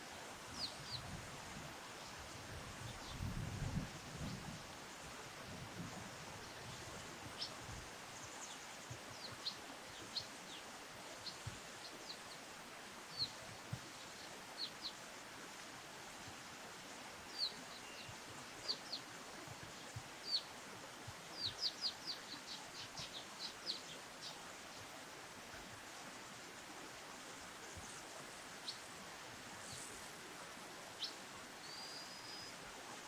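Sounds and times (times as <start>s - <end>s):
steady background hiss: 0.0s - 33.0s
small birds chirping: 6.4s - 15.0s, 17.3s - 19.1s, 19.7s - 20.6s, 21.3s - 24.9s, 27.6s - 29.0s, 30.8s - 32.6s.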